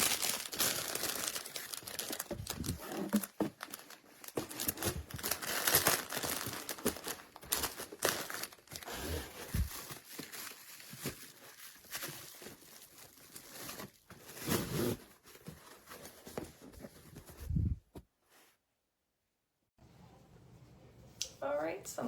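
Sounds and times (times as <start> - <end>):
packaging crinkling: 0.0 - 14.9.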